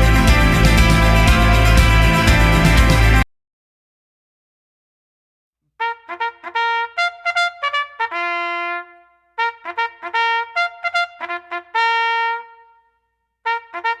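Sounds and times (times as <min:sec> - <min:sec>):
trumpet playing quick notes: 0:00.0 - 0:03.2, 0:05.8 - 0:12.8, 0:13.5 - 0:14.0.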